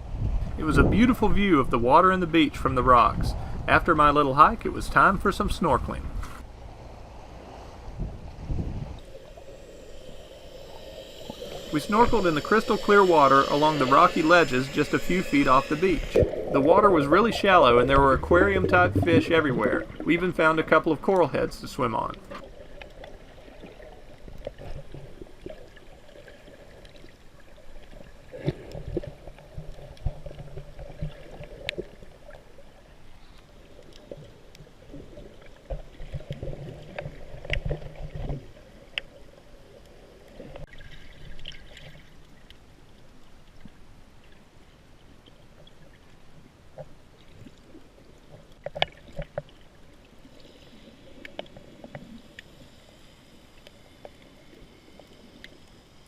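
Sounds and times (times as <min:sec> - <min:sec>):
water sloshing and gurgling: 0:00.0 - 0:56.0.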